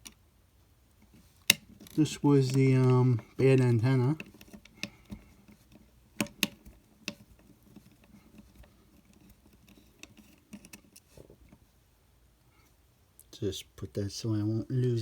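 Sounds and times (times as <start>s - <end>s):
plastic parts clicking: 1.0s - 11.6s.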